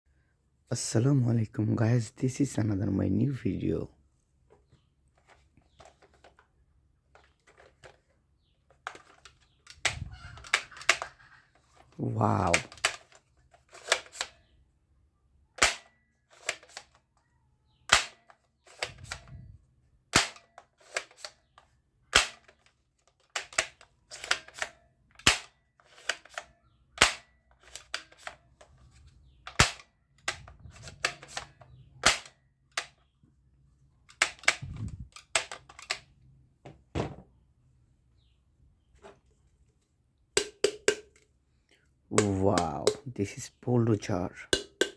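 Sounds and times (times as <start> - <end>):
toy gun plastic clicks: 8.7 - 14.6, 15.5 - 19.5, 20.1 - 33.1, 34.0 - 36.2, 40.4 - 41.4, 42.1 - 43.4, 44.5 - 44.9.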